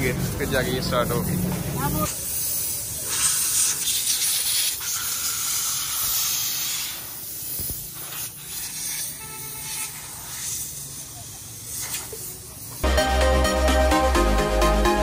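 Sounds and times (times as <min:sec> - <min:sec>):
compressed air hissing from nozzle: 0:02.0 - 0:12.8.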